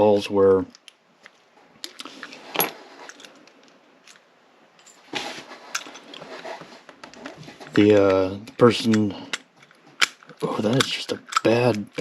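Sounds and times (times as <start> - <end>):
rustling scrape: 2.1 - 3.4, 4.9 - 8.1
lock-picking tools clicking: 7.0 - 12.0.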